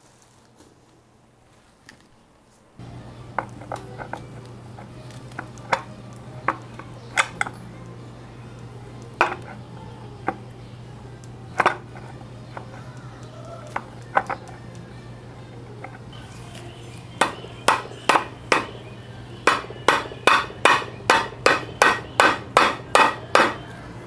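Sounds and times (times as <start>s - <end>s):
metal tools clinking: 11.5s - 13.0s.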